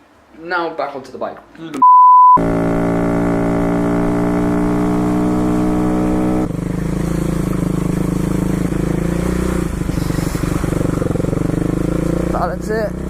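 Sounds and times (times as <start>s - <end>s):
dirt bike engine running: 2.4s - 13.0s.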